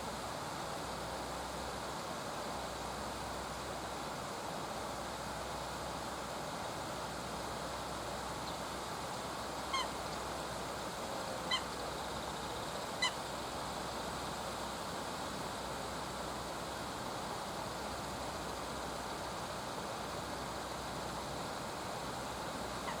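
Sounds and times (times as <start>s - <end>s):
river hiss: 0.0s - 23.0s.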